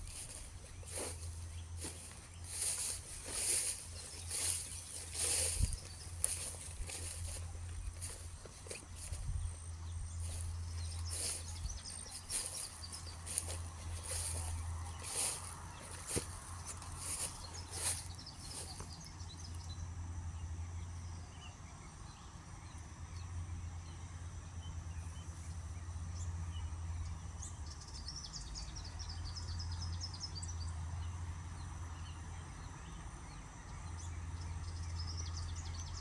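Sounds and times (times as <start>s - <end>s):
small birds trilling: 0.0s - 19.9s
distant machine engine rumble: 0.0s - 21.3s.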